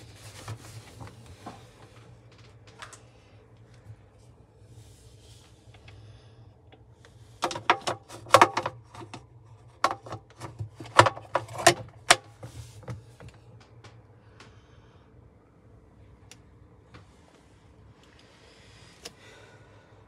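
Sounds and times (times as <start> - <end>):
hard objects clicking and knocking: 7.4 - 14.0.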